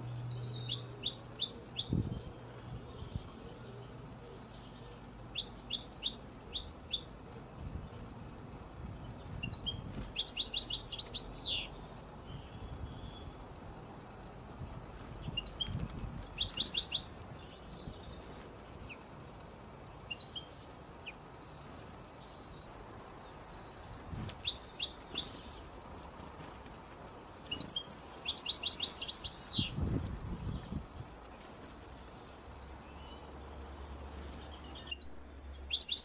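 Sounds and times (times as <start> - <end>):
bird chirps: 0.0 - 7.1, 9.4 - 13.4, 15.3 - 18.2, 22.2 - 25.6, 27.5 - 30.8, 32.5 - 36.0
songbird singing: 0.0 - 25.8, 27.3 - 36.0.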